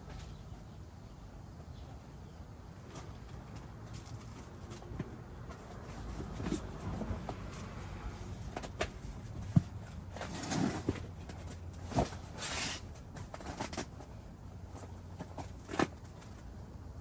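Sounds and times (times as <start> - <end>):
rustling: 3.9 - 16.5
objects knocking and thumping: 8.4 - 14.2.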